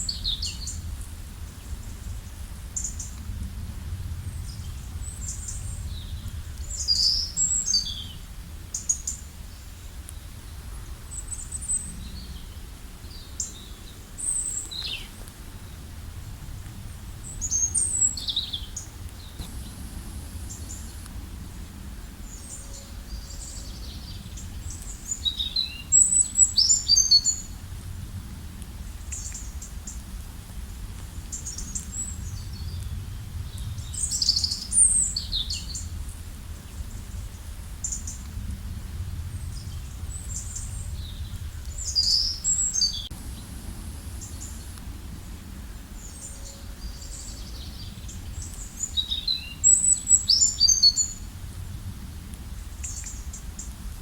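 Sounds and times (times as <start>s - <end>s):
songbirds chirping: 4.2s - 16.0s, 16.6s - 27.7s, 39.3s - 51.3s, 52.6s - 53.9s
low background rush: 11.8s - 25.2s.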